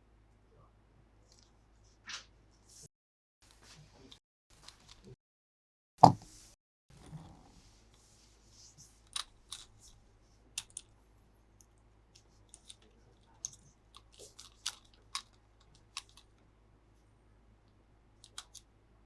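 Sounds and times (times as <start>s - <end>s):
plastic clicks and crinkles: 12.5s - 16.3s.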